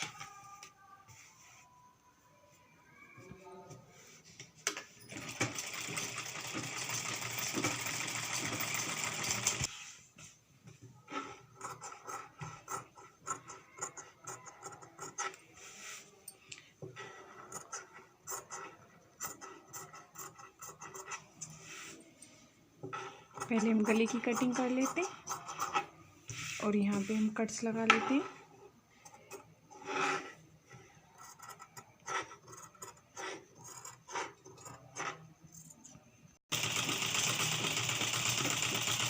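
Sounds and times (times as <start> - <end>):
sewing machine stitching: 5.0 - 9.7, 36.5 - 39.0.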